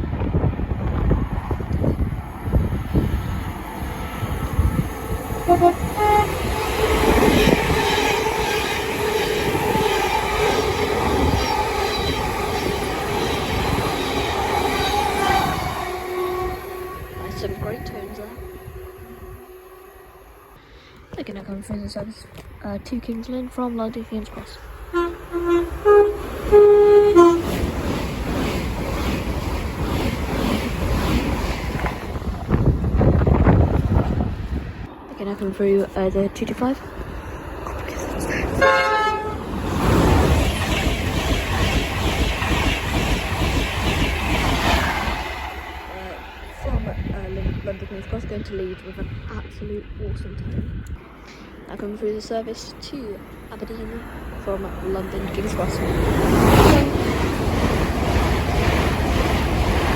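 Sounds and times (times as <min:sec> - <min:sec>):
train rumble and wheel clatter: 0:00.0 - 0:59.9
two-note train horn: 0:05.4 - 0:06.5, 0:15.4 - 0:20.4, 0:24.9 - 0:27.6, 0:38.6 - 0:39.4.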